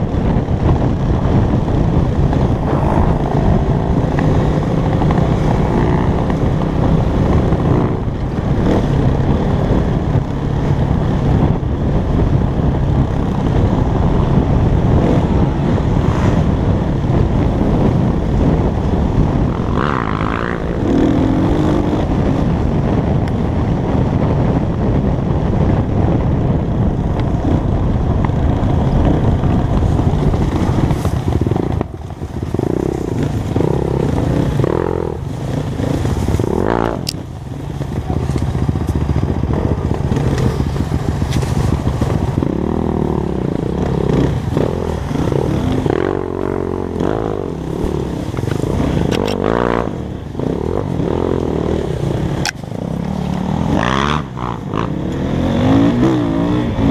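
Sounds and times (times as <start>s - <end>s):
dirt bike engine revving: 1.2s - 9.8s, 14.8s - 16.8s, 30.0s - 56.9s.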